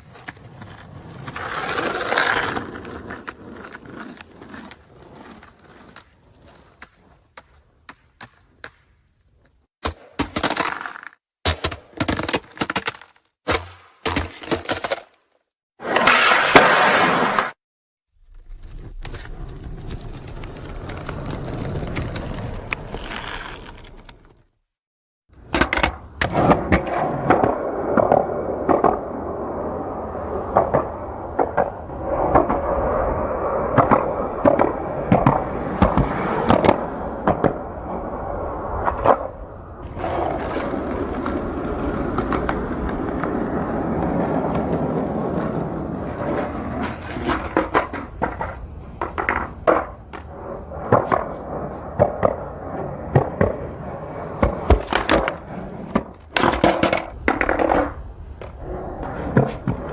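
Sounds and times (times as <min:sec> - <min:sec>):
skateboard wheels rolling: 0:00.0 - 0:15.2, 0:15.8 - 0:17.6, 0:18.2 - 0:24.5, 0:25.3 - 0:59.9
skateboard clacking: 0:25.4 - 0:29.1, 0:33.6 - 0:37.9, 0:40.0 - 0:59.9.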